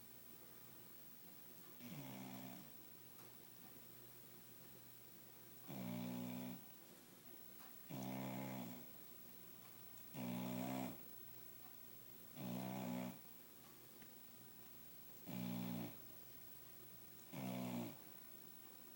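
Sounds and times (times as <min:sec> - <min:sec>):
dog snoring: 0:01.8 - 0:02.7, 0:05.6 - 0:06.7, 0:07.9 - 0:08.9, 0:10.1 - 0:11.0, 0:12.3 - 0:13.3, 0:15.2 - 0:16.0, 0:17.3 - 0:18.1.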